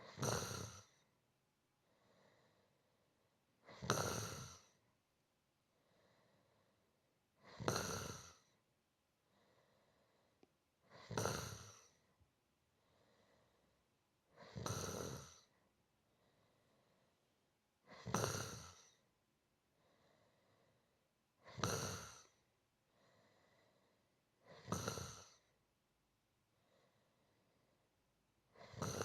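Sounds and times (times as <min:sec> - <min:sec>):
person snoring: 0:00.0 - 0:01.1, 0:03.6 - 0:04.8, 0:07.4 - 0:08.6, 0:10.8 - 0:12.1, 0:14.3 - 0:15.5, 0:17.9 - 0:19.0, 0:21.4 - 0:22.4, 0:23.2 - 0:25.5, 0:28.6 - 0:29.0
faint breaths: 0:01.8 - 0:05.0, 0:05.6 - 0:25.6, 0:26.5 - 0:29.0.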